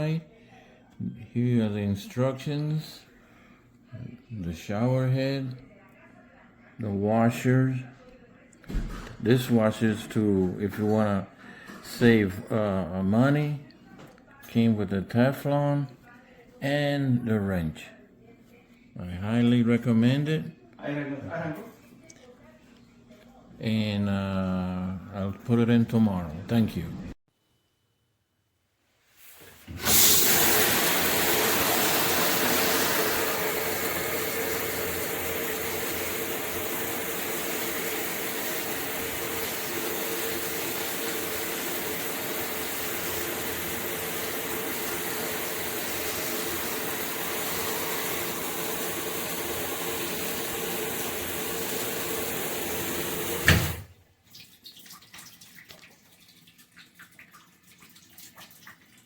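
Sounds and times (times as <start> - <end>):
shower head spraying water: 29.7 - 53.9.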